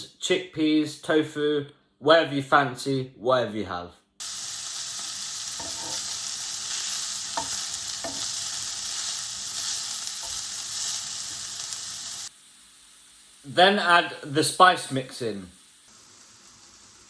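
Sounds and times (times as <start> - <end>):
mince sizzling in a pan: 4.2 - 17.0.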